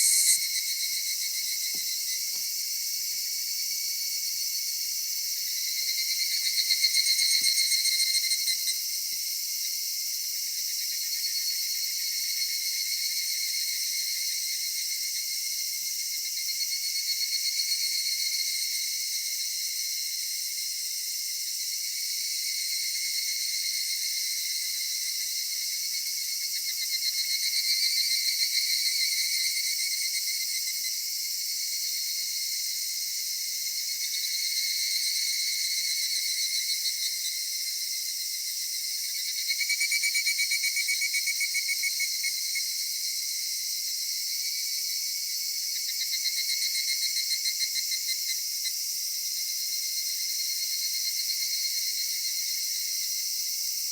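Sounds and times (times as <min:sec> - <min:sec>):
pulsing cicada calls: 0:00.0 - 0:15.5, 0:20.8 - 0:43.0
cicadas droning in chorus: 0:00.0 - 0:53.9.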